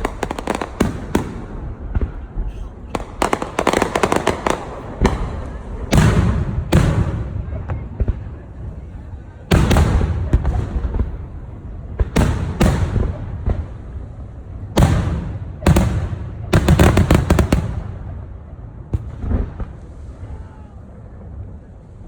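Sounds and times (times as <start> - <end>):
volley of firework cracks: 0.0 - 8.4, 9.5 - 13.9, 14.6 - 18.3
fireworks booming: 0.0 - 20.4.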